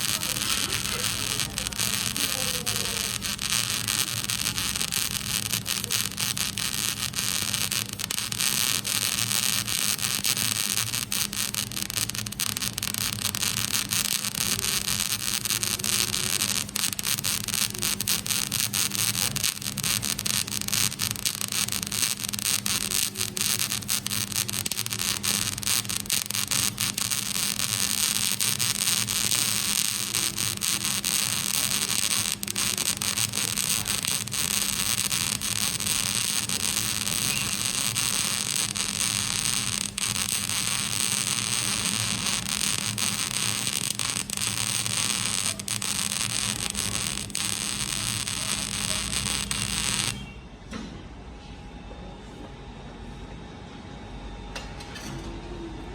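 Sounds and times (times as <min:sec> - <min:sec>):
welding arc crackling and sizzling: 0:00.0 - 0:50.3
low electrical hum: 0:00.0 - 0:55.9.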